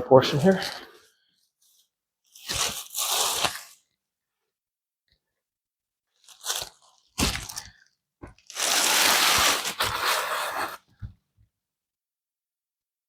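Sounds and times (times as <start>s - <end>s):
packaging tearing: 2.3s - 3.8s, 6.2s - 7.8s, 8.4s - 10.8s.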